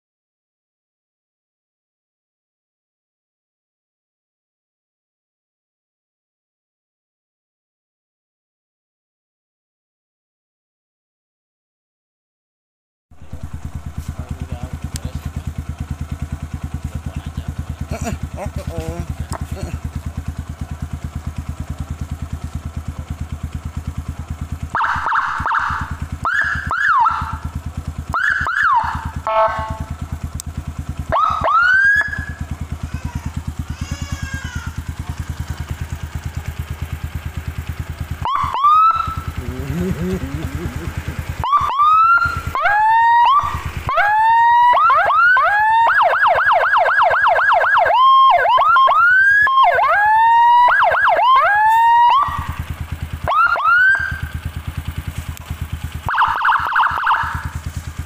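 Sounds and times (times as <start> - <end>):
motorcycle engine idling: 13.1 - 58.0
siren whoops and chirps: 24.7 - 27.5, 28.1 - 29.9, 31.1 - 32.4, 38.2 - 39.4, 41.4 - 54.3, 56.0 - 57.6.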